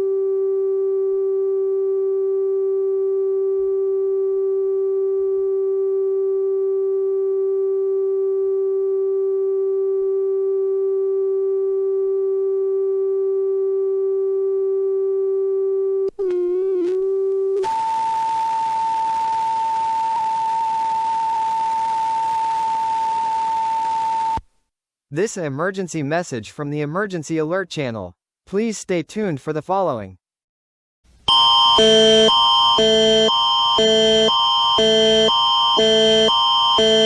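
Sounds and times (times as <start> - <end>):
buzzy electronic tone: 31.8 - 37.0.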